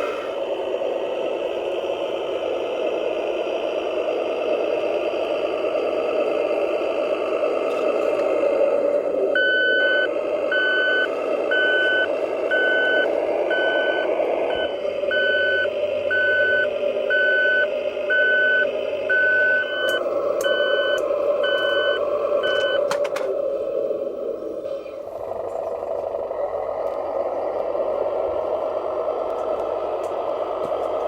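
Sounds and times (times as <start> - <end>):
engine hum: 0.0 - 31.0
reversing beeper: 9.3 - 23.2.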